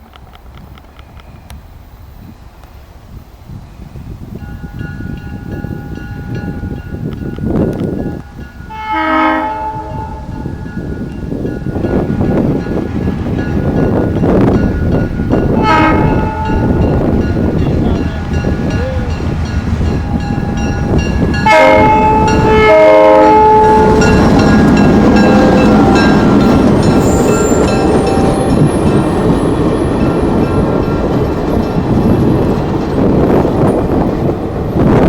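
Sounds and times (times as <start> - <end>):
train rumbling by: 0.0 - 35.0
train horn chord: 8.7 - 10.7, 15.5 - 18.3, 21.3 - 29.1.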